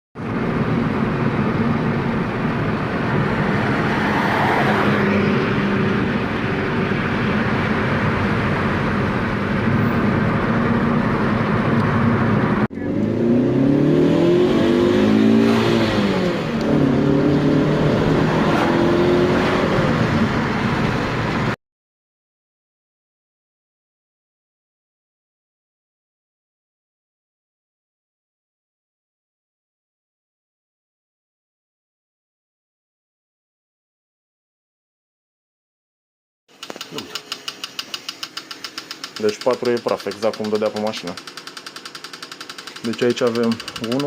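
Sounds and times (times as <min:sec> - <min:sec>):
car engine running and revving: 0:00.2 - 0:21.6, 0:36.6 - 0:44.0.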